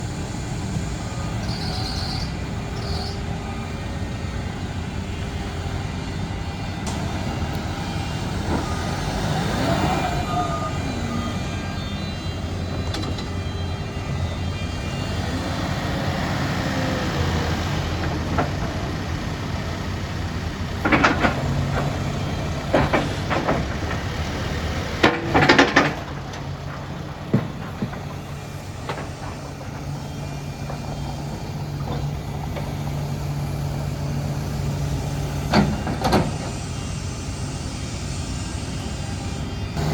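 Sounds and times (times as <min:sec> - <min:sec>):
diesel engine running: 0:00.0 - 0:39.9
hydraulic whine: 0:00.0 - 0:39.9
loud metal clanks: 0:20.7 - 0:33.0.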